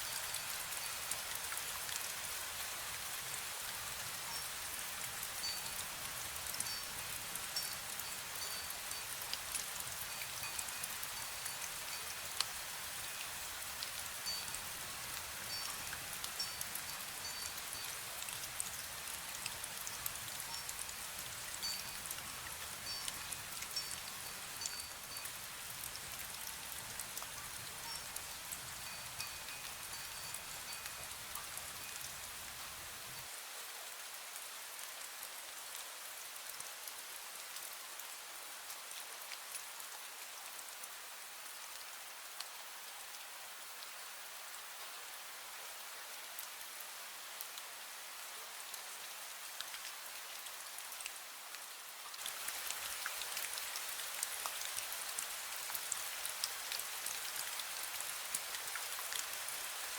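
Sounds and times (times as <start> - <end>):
fine rain pattering: 0.0 - 59.9
wind chime tinkling: 5.4 - 5.8, 6.6 - 9.2, 14.2 - 18.0, 20.5 - 20.8, 21.6 - 25.4, 27.8 - 32.0.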